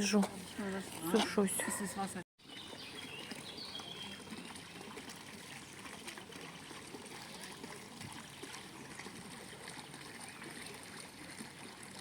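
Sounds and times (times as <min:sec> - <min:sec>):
spring water trickling and splashing: 0:00.0 - 0:12.0.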